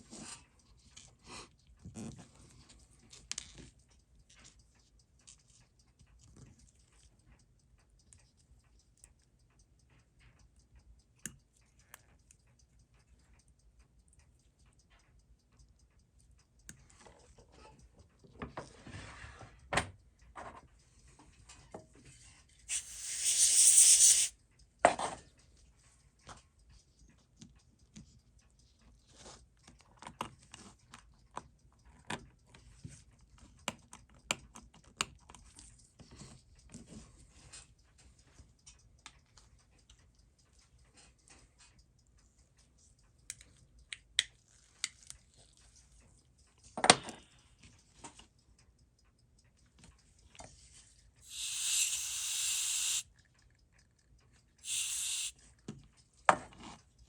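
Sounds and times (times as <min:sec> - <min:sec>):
short hissing bursts: 0:22.7 - 0:24.3, 0:51.2 - 0:53.0, 0:54.6 - 0:55.3.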